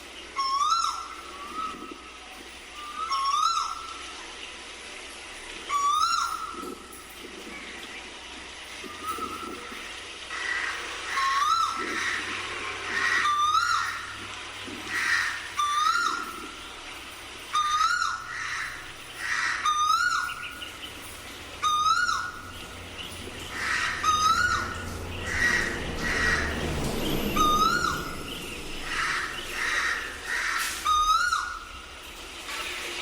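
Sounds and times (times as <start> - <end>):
cuckoo calling: 0.0 - 33.0
other birds calling: 0.0 - 33.0.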